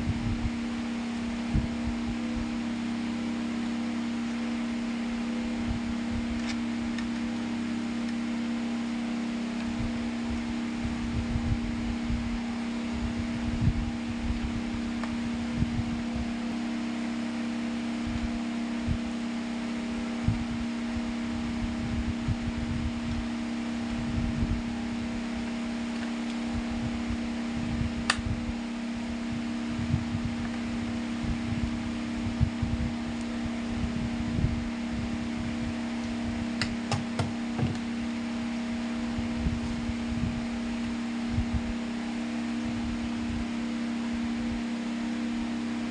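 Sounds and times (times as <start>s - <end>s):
wind rumble on microphone: 0.0s - 2.5s, 9.7s - 16.4s, 18.0s - 19.1s, 20.1s - 25.6s, 26.4s - 37.9s, 38.8s - 41.8s
electric fan humming: 0.0s - 45.9s.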